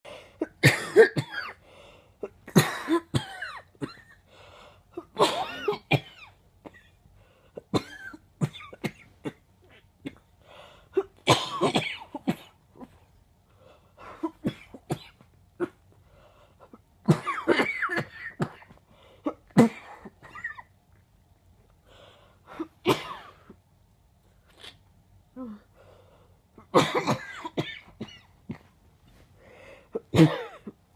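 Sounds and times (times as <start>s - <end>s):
person coughing: 0.4s - 1.6s, 2.2s - 4.2s, 5.0s - 7.0s, 7.6s - 10.2s, 11.0s - 13.0s, 17.1s - 20.7s, 22.5s - 23.5s, 26.6s - 28.7s, 29.9s - 30.8s.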